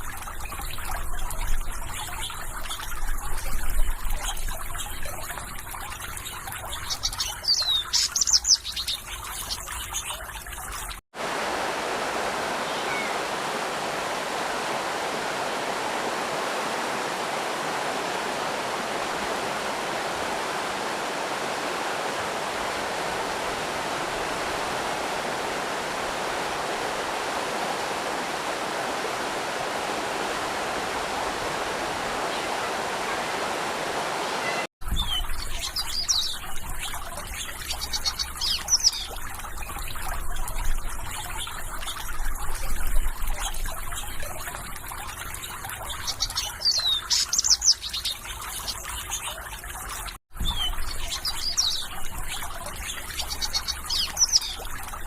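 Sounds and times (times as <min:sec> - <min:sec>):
faint water trickle: 0:00.0 - 0:33.7, 0:34.4 - 0:55.0
rushing water: 0:00.0 - 0:55.0
small birds chirping: 0:06.0 - 0:10.3, 0:12.6 - 0:13.3, 0:34.4 - 0:39.2, 0:43.4 - 0:49.4, 0:50.4 - 0:55.0.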